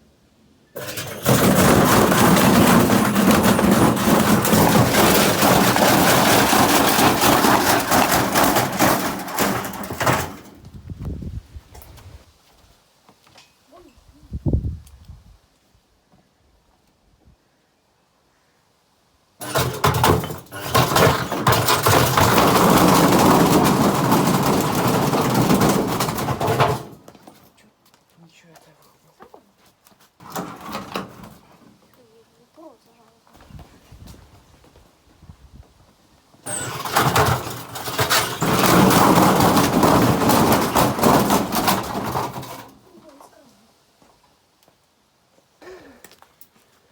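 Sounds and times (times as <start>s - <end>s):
brick banging in drum: 0.8s - 10.6s, 19.4s - 27.1s, 36.5s - 42.7s.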